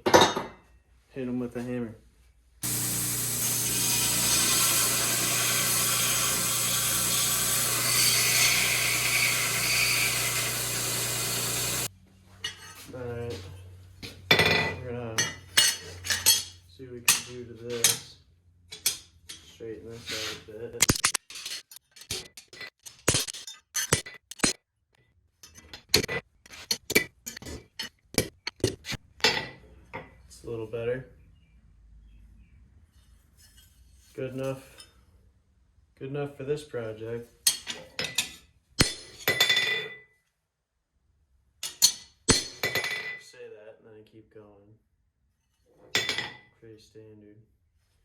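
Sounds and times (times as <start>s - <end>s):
grinder grinding steel: 2.6s - 11.9s.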